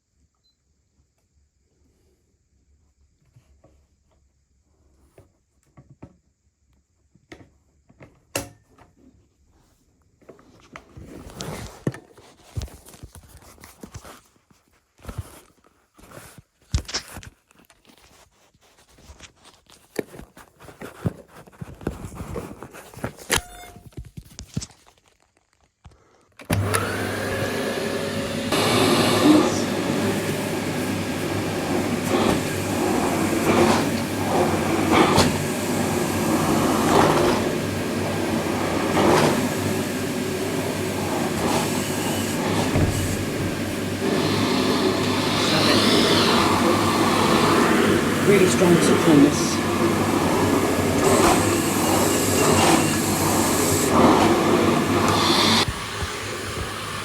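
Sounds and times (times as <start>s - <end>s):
vacuum cleaner motor whine: 26.4s - 57.0s.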